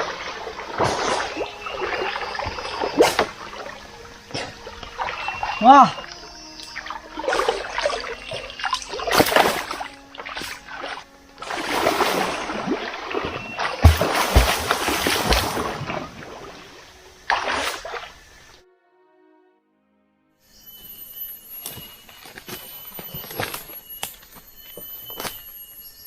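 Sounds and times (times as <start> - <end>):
water splashing and rushing: 0.0 - 18.6
faint background music: 0.0 - 25.4
low thumps: 13.6 - 16.0.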